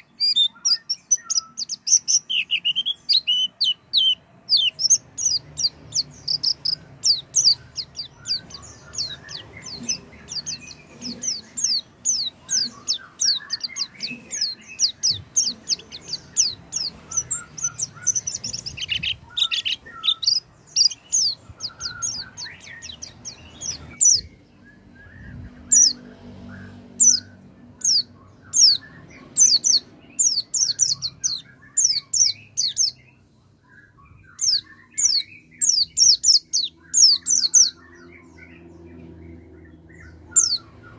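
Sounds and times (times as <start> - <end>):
songbird chirping rapidly: 0.0 - 40.9.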